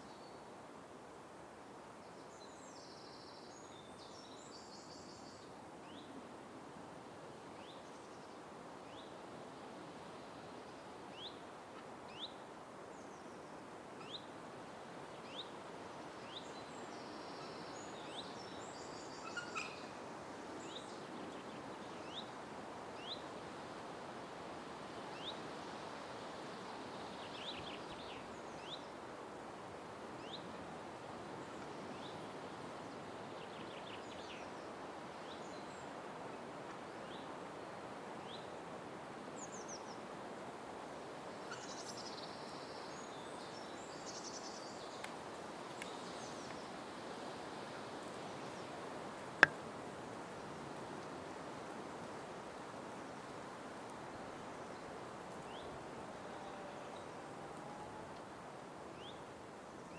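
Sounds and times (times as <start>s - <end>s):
background hiss: 0.0s - 59.9s.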